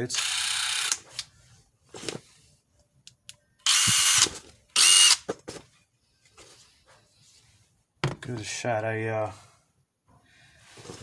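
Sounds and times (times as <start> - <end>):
impact wrench motor whine: 3.7 - 5.2.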